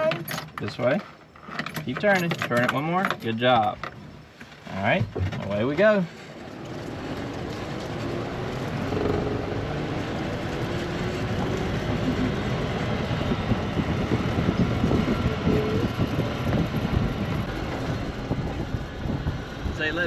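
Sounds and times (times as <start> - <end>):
vehicle rattling and bumping: 0.0 - 20.0
vehicle engine accelerating: 6.4 - 20.0.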